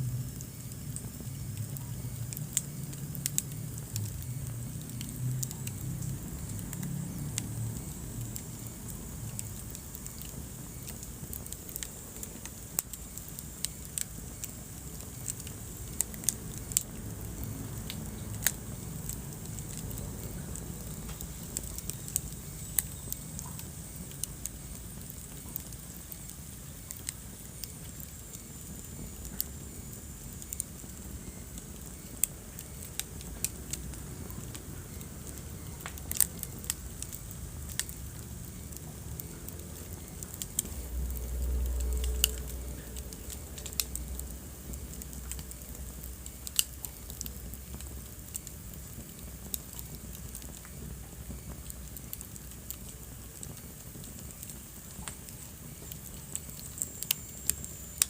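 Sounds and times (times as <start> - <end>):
low rumble of burning: 0.0 - 58.0
wood fire crackling: 0.0 - 58.0.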